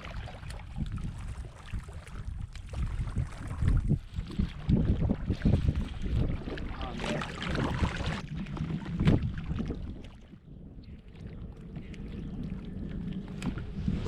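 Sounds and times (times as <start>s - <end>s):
water around a kayak: 0.0s - 14.0s
wind rumbling on microphone: 0.0s - 14.0s.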